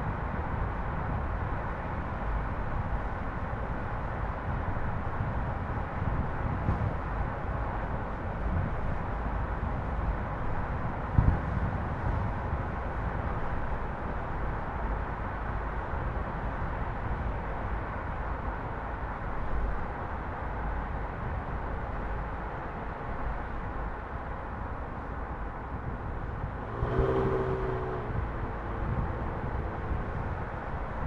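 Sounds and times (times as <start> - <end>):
car road noise: 0.0 - 31.0
passing vehicle engine hum: 25.0 - 31.0.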